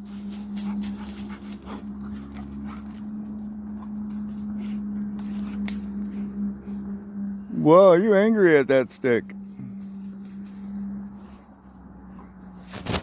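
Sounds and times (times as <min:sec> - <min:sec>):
stick cracking in dog's jaws: 0:05.1 - 0:06.1.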